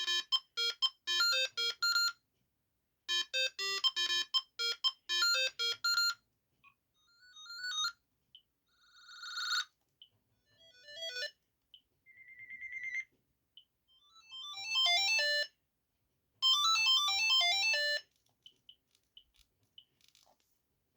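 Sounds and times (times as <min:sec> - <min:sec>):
phone ringtone melodies: 0:00.0 - 0:02.1, 0:03.1 - 0:06.2, 0:10.6 - 0:11.4, 0:14.0 - 0:15.6, 0:16.4 - 0:18.0.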